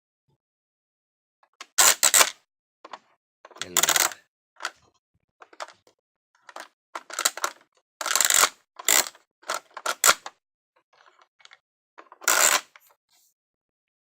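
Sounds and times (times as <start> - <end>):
plastic toy train pieces clattering: 3.5 - 4.8, 5.4 - 5.8, 6.4 - 10.3, 11.0 - 12.9.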